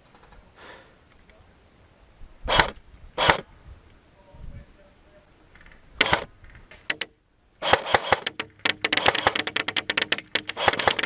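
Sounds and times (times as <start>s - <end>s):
airsoft guns firing: 2.5s - 3.4s, 6.0s - 11.0s.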